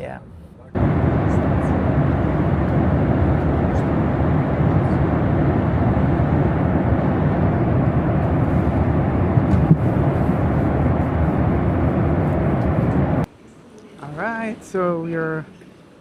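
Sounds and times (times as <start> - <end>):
jet engine cabin noise: 0.6 - 13.3.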